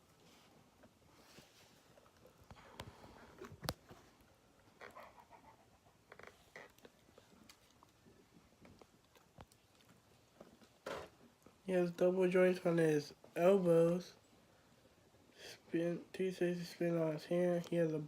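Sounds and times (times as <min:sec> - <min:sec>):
soft rustles: 0:00.0 - 0:11.6.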